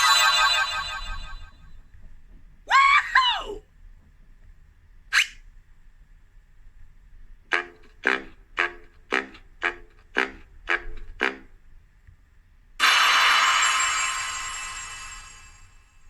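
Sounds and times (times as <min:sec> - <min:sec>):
cartoon yelp: 0:00.0 - 0:01.5, 0:02.7 - 0:03.6.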